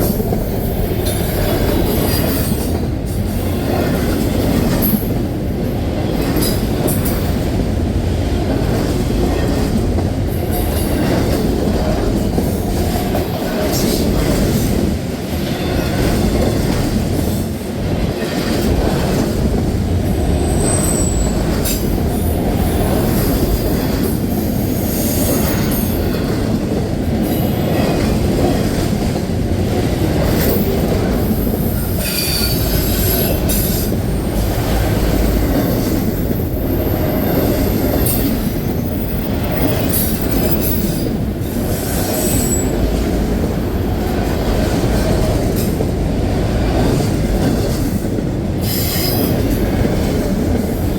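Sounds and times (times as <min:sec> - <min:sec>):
train wheels rumbling on rail: 0:00.0 - 0:50.9
high wheel squeals: 0:20.4 - 0:21.4.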